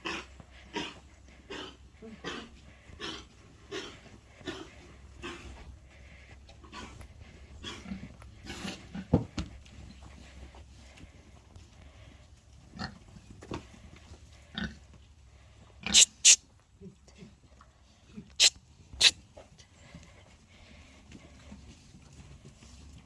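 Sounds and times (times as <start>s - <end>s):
pigs grunting: 0.0s - 9.2s, 14.4s - 14.8s, 15.8s - 17.3s, 18.2s - 19.1s.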